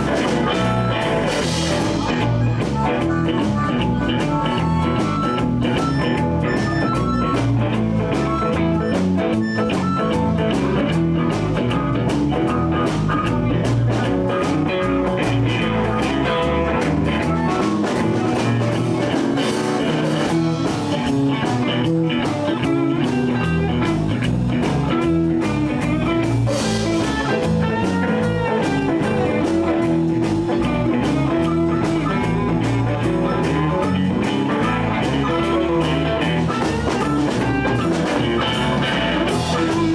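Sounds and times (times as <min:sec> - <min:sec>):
electric guitar bent sliding notes: 0:00.0 - 0:39.9
live blues band playing: 0:00.0 - 0:39.9.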